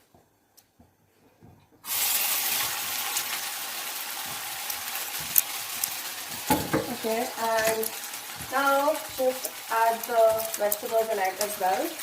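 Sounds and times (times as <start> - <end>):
food sizzling in hot oil: 1.8 - 12.0.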